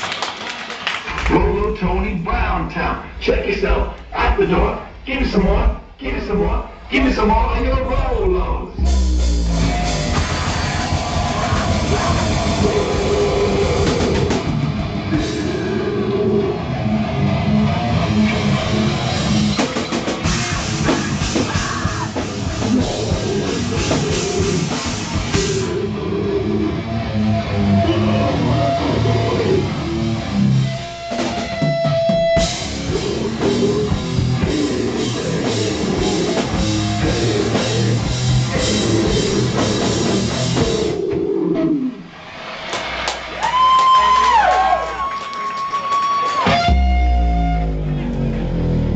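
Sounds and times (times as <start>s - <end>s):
pounding drum kit: 1.1s - 27.8s, 28.4s - 41.4s, 46.0s - 48.9s
distorted electric guitar: 1.2s - 43.6s, 46.2s - 48.9s.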